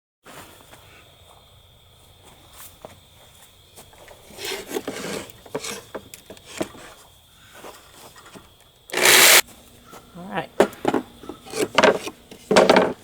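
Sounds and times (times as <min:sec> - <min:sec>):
wood and tools rubbing and scraping: 0:04.2 - 0:07.1, 0:07.7 - 0:09.4, 0:10.7 - 0:13.0.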